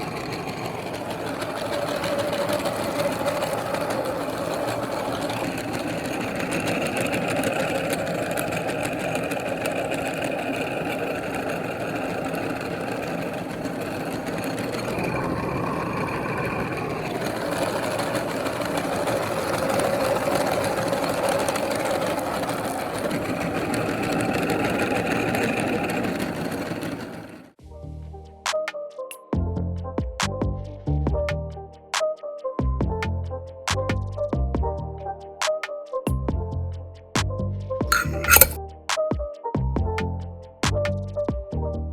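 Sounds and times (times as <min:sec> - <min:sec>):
electric meat grinder whirring: 0:00.0 - 0:13.5, 0:14.2 - 0:26.4, 0:37.9 - 0:38.6.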